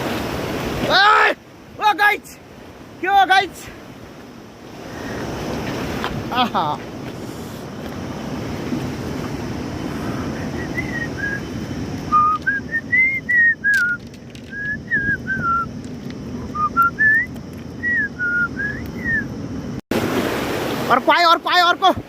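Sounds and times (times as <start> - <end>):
river water rushing: 0.0 - 14.0, 19.9 - 22.0
person whistling a tune: 10.4 - 11.5, 12.1 - 15.7, 16.5 - 19.3.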